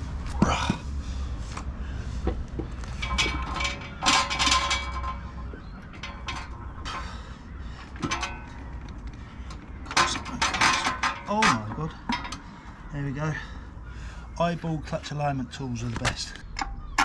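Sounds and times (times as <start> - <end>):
metallic clinks and knocks: 2.6 - 7.1, 7.8 - 12.4.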